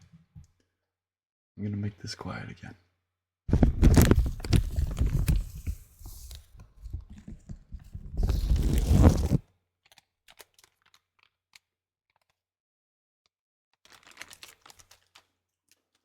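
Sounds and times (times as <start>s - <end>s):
plastic bag crinkling: 3.5s - 9.4s, 13.8s - 16.0s.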